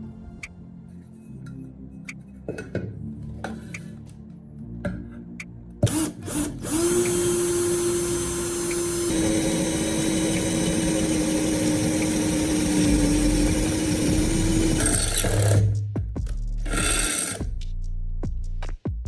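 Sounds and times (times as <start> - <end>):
power drill running: 5.9 - 15.7, 16.7 - 17.4.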